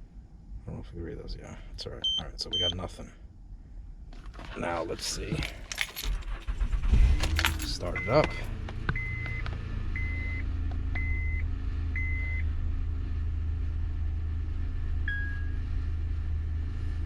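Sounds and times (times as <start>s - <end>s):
low beep: 2.0s - 2.8s, 7.6s - 8.4s, 9.0s - 9.4s, 10.0s - 10.4s, 11.0s - 11.4s, 15.1s - 15.6s
car engine idling: 4.7s - 12.2s
dashboard chime beeping: 7.9s - 8.4s.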